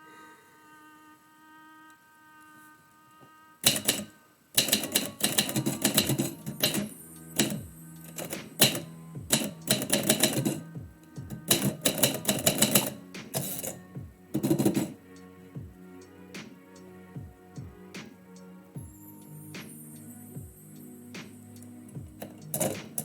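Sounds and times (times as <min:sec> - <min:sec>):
typewriter keys clacking: 0:03.6 - 0:10.6, 0:11.3 - 0:13.8.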